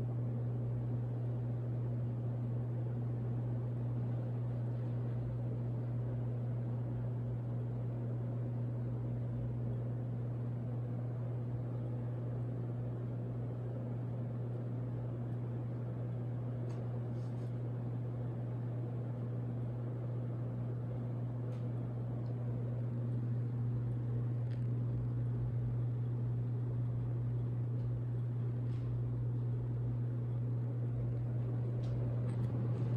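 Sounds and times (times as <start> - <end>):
ceiling fan motor hum: 0.0 - 32.9
rush of air from fan: 31.3 - 32.9.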